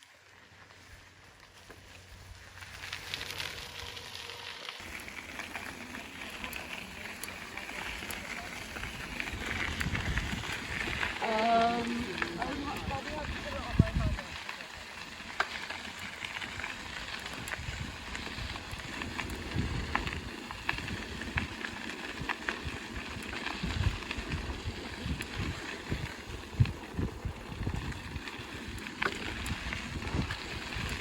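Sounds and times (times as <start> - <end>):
bicycle tyres rumbling: 0.0 - 31.0
bike clicks and rattles: 0.7 - 31.0
wind buffeting microphone: 7.6 - 14.4, 16.5 - 31.0.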